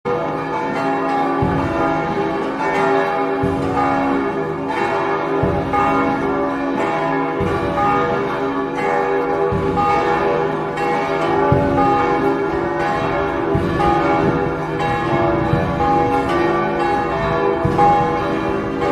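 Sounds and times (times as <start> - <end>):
church bells ringing: 0.1 - 18.9
deep bell striking: 7.3 - 8.2, 9.2 - 18.9.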